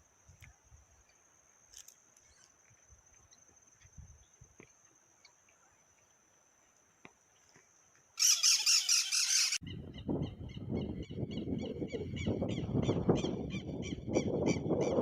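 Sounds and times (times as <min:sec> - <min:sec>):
bird squawking: 0:08.2 - 0:09.6
repeated bird calls: 0:08.2 - 0:15.0.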